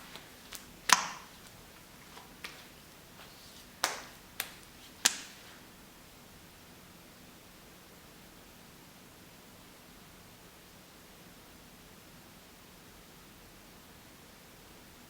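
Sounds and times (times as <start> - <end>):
sharp taps: 0.0 - 5.6.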